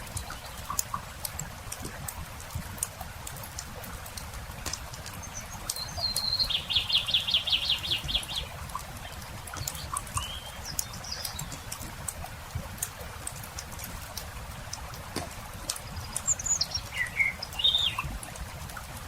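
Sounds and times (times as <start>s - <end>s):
campfire crackling and popping: 0.0s - 19.0s
songbird trilling and chirping: 5.3s - 8.5s, 9.6s - 11.7s, 15.9s - 18.1s.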